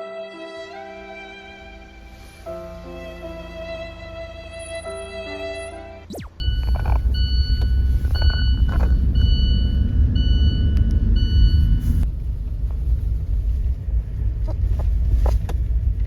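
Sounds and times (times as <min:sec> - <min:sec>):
repeating electronic beep: 0:06.1 - 0:12.0
car engine rumble: 0:06.2 - 0:16.0.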